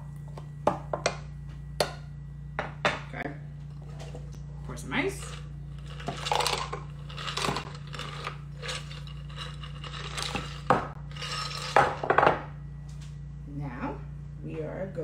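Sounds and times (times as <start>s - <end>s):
ice cubes clattering into cup: 5.2s - 12.1s.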